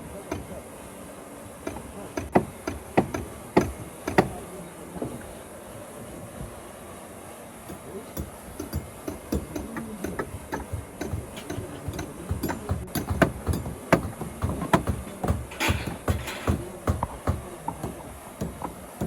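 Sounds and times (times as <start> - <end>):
hammer knocking on timber: 1.7 - 4.4, 8.2 - 19.0.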